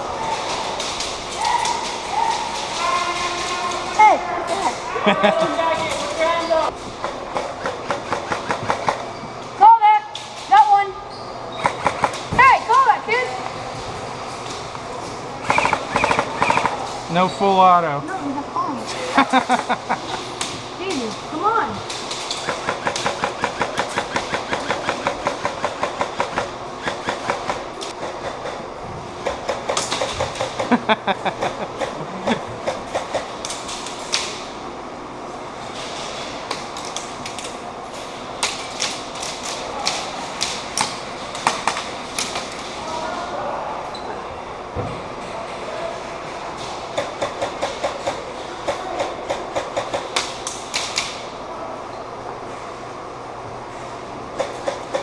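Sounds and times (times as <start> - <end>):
airsoft guns firing bursts: 15.4 - 16.8, 22.3 - 27.6.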